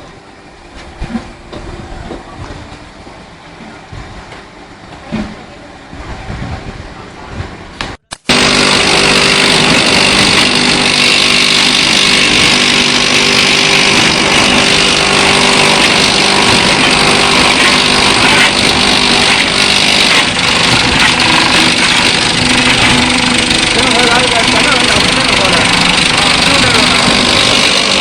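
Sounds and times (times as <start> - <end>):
concrete pump running: 8.1 - 28.0.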